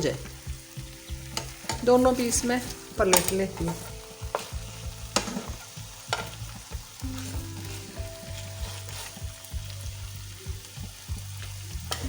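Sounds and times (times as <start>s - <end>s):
chicken sizzling in a pan: 0.0s - 12.0s
utensil clicking against pan: 1.2s - 7.0s.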